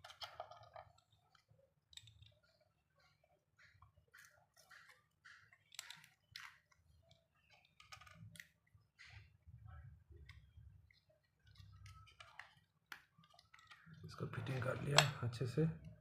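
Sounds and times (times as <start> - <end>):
plastic parts clicking and scraping: 0.0 - 16.0.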